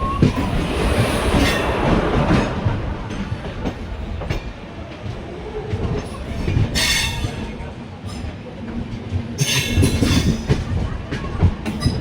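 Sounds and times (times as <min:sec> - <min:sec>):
train rumbling: 0:00.0 - 0:12.0
train wheels clacking on rail joints: 0:00.0 - 0:12.0.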